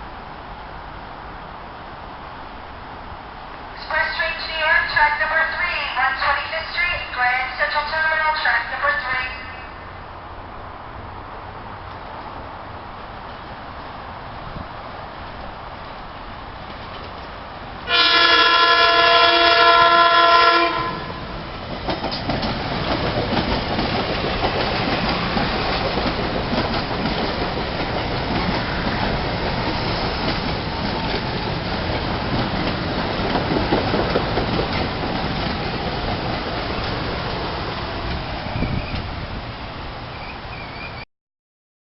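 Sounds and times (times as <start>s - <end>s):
train wheels on rails: 10.6s - 41.0s
train horn blast: 17.9s - 21.3s.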